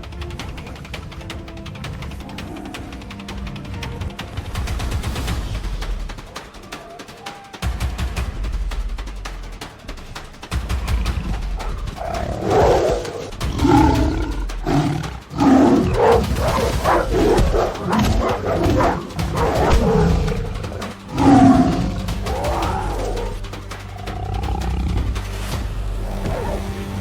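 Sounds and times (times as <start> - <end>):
animals roaring and snarling: 2.0 - 4.1, 10.8 - 27.0
low steady drone: 11.1 - 27.0.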